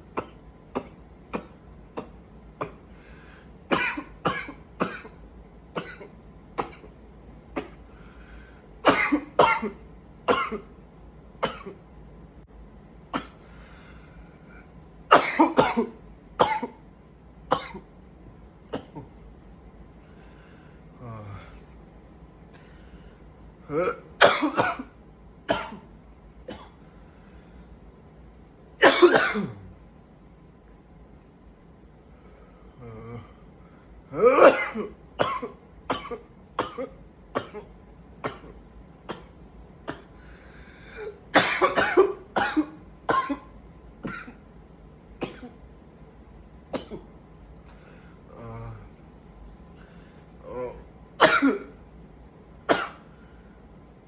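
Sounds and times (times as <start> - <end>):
man coughing: 0.2 - 3.0, 3.7 - 5.2, 5.8 - 6.9, 7.6 - 7.8, 8.8 - 10.7, 11.4 - 11.8, 13.2 - 13.4, 15.1 - 16.8, 17.5 - 17.8, 18.7 - 19.2, 23.7 - 25.9, 26.5 - 26.8, 28.8 - 29.7, 34.1 - 39.3, 39.9 - 44.4, 45.2 - 45.6, 46.8 - 47.1, 50.4 - 51.8, 52.7 - 53.1
faint low groan: 20.9 - 21.8, 32.3 - 34.4, 47.7 - 49.0, 50.4 - 51.0.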